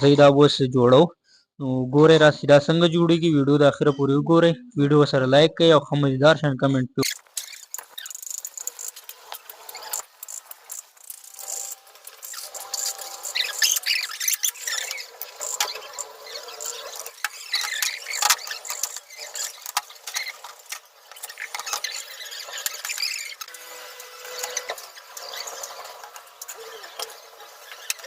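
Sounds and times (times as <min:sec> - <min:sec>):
short squeaks: 0:07.0 - 0:28.0.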